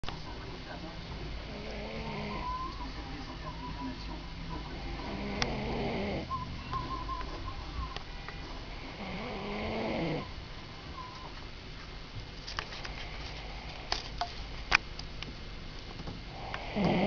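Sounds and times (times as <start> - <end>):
man snoring: 1.4 - 2.5, 4.8 - 6.3, 8.8 - 10.3, 16.3 - 17.0.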